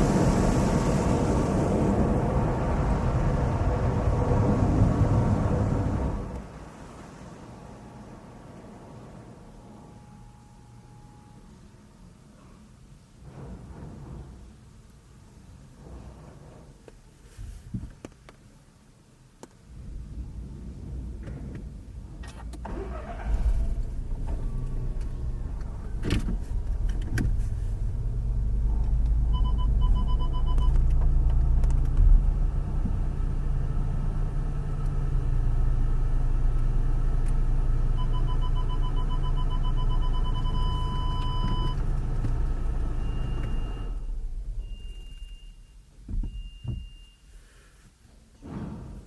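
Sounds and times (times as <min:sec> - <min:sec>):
car wash machinery rumble: 0:00.0 - 0:10.2, 0:19.7 - 0:46.2.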